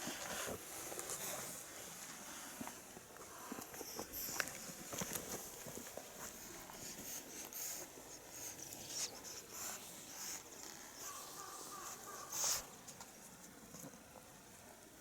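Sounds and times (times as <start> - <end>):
kittens scampering and pawing: 0.0 - 14.2.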